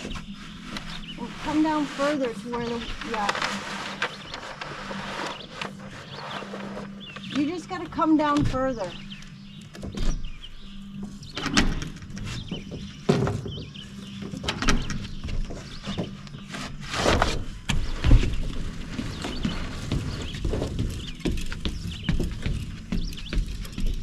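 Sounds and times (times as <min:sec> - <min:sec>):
rustling swish of sheet: 0:00.0 - 0:07.0
knocks and scrapes on roof: 0:11.8 - 0:24.0.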